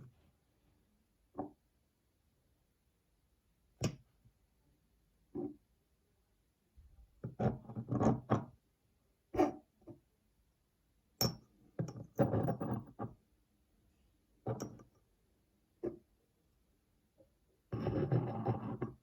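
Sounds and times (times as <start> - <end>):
hard objects knocking and scraping: 7.2 - 8.5, 14.5 - 15.0, 17.8 - 19.0.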